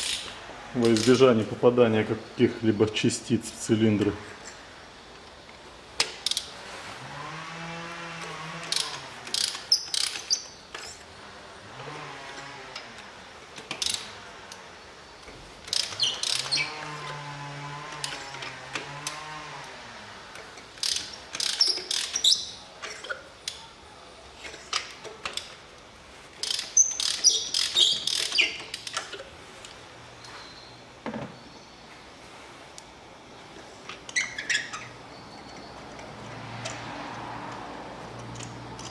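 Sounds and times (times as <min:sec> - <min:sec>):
ratchet wrench clicking: 0:00.0 - 0:01.3, 0:08.2 - 0:11.1, 0:13.6 - 0:14.6, 0:15.6 - 0:16.7, 0:20.4 - 0:23.6, 0:26.4 - 0:29.2, 0:35.5 - 0:38.9.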